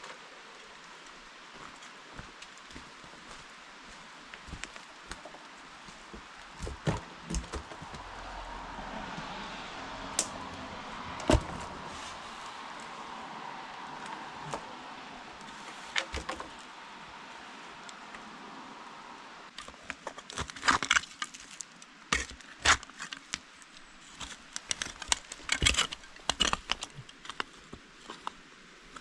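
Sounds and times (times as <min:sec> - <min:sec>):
faint steady hiss: 0:00.0 - 0:07.6
wooden knocks and cracks: 0:06.1 - 0:08.0, 0:15.9 - 0:16.6, 0:24.2 - 0:27.8.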